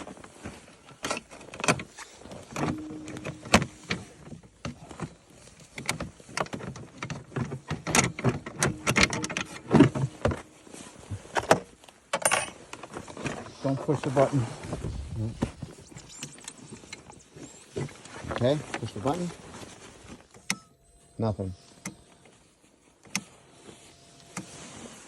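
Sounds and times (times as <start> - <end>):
faint steady hum: 2.2 - 5.5, 7.8 - 11.5, 18.8 - 25.0
metallic clicks and knocks: 2.5 - 4.8, 5.8 - 10.5.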